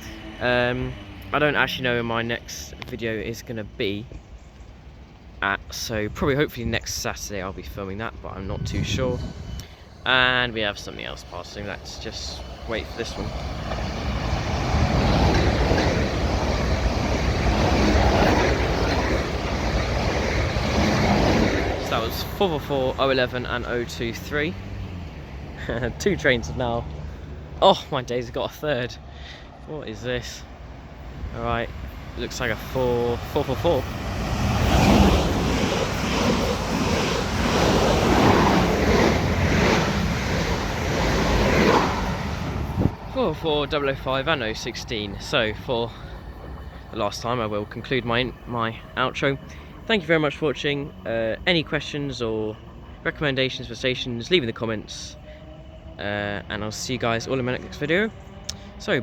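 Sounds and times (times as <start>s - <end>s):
train passing: 0.0s - 59.0s
wind buffeting microphone: 5.8s - 25.5s, 30.6s - 51.4s.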